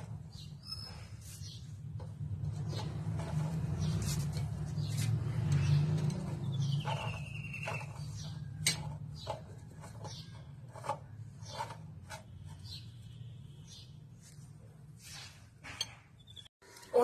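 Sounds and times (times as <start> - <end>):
rubbing: 2.3 - 14.4.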